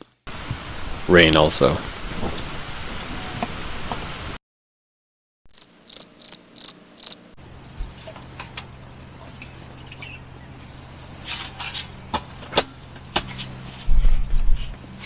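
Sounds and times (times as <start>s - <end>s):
rain and wind: 0.3s - 4.4s
cricket chirping: 5.5s - 7.3s.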